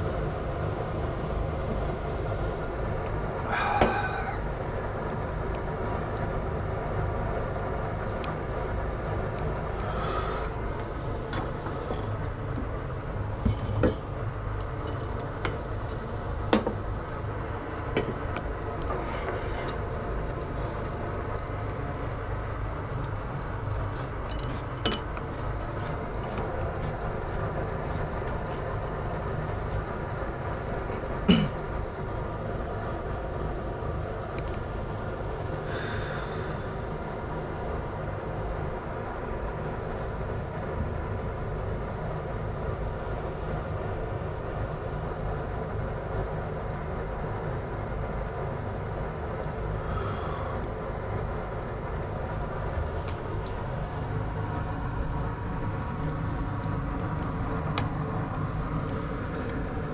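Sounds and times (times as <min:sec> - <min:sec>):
steady low kitchen noise: 0:00.0 - 0:59.9
utensils clinking on dishes: 0:24.3 - 0:25.1.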